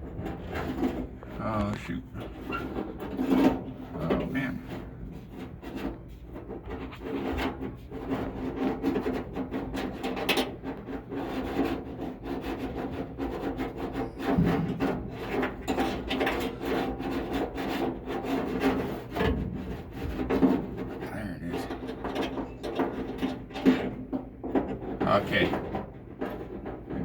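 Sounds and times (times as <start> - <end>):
screwdriver scraping metal plate: 0.1 - 27.0.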